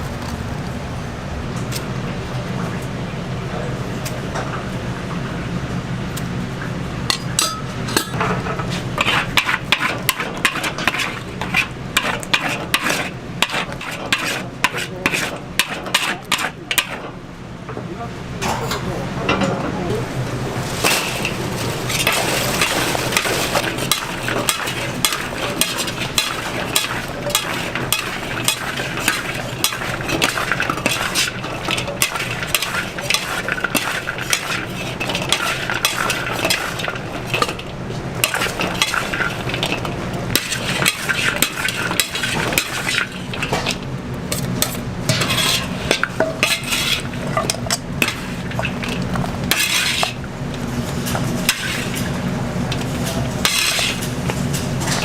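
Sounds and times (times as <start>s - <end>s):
metal utensil scraping a pan: 9.0s - 17.0s, 20.8s - 37.6s, 38.2s - 50.2s, 51.4s - 52.1s, 53.1s - 55.0s
food sizzling: 20.1s - 52.3s.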